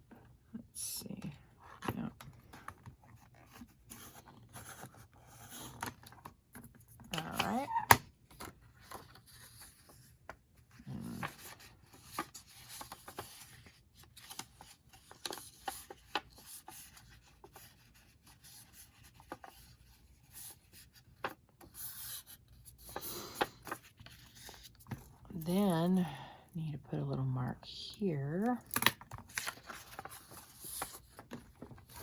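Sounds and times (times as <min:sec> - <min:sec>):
paper rubbing and rustling: 0:29.0 - 0:32.0.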